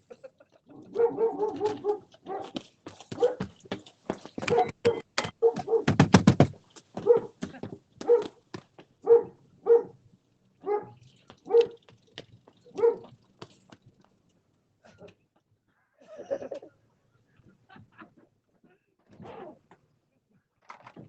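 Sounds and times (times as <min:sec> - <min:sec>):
dog barking: 0:00.7 - 0:03.5, 0:04.4 - 0:06.0, 0:07.0 - 0:07.4, 0:08.0 - 0:08.4, 0:09.0 - 0:10.0, 0:10.6 - 0:11.8, 0:12.7 - 0:13.1.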